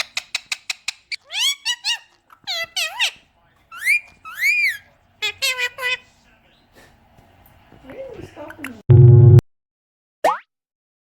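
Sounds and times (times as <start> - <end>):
parrot clicking: 0.0 - 3.1
parrot whistling: 0.1 - 6.0.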